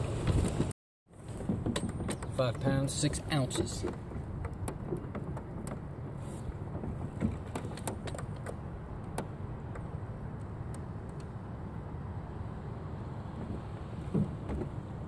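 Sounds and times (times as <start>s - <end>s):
wind rumble on microphone: 0.0s - 15.0s
small clicks and knocks: 1.3s - 11.4s.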